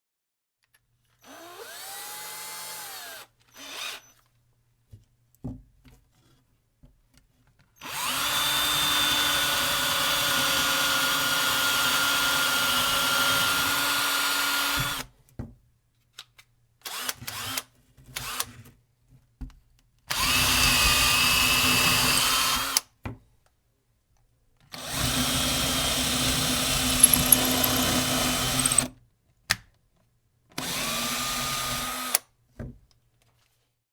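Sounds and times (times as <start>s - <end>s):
cordless drill drilling into wood: 1.2s - 4.2s, 7.8s - 15.1s, 16.9s - 18.5s, 20.1s - 22.8s, 24.8s - 28.9s, 30.6s - 32.2s.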